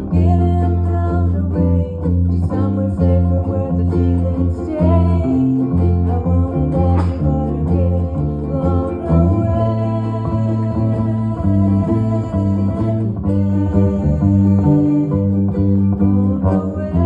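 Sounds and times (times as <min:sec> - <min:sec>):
repeating bass line: 0:00.0 - 0:17.0
rock guitar chords: 0:00.0 - 0:17.0.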